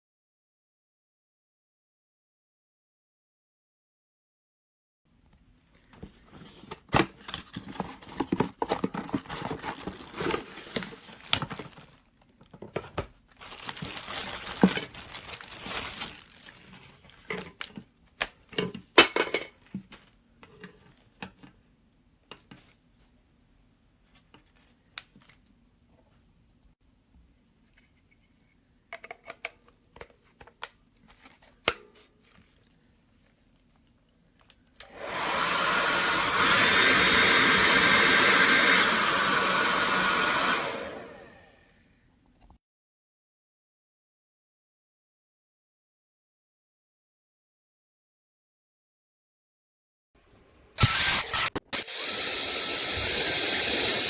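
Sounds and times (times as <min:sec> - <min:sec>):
packaging crinkling: 0:07.4 - 0:17.3
hair dryer: 0:34.8 - 0:41.7, 0:50.8 - 0:54.0.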